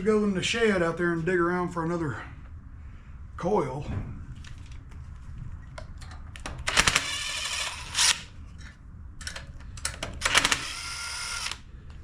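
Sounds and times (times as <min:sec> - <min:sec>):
tool handling clicks and rattles: 0:08.5 - 0:10.6
cordless driver running: 0:10.2 - 0:11.6.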